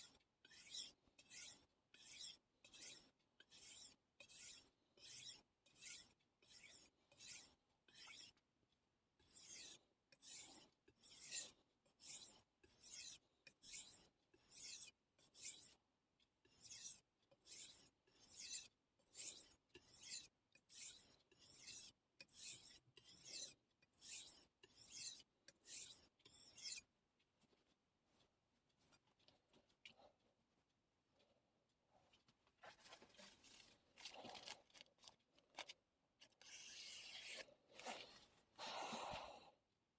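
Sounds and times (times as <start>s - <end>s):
knife scraping on whetstone: 0.5s - 8.4s, 9.2s - 15.8s, 16.5s - 26.8s, 36.3s - 38.2s.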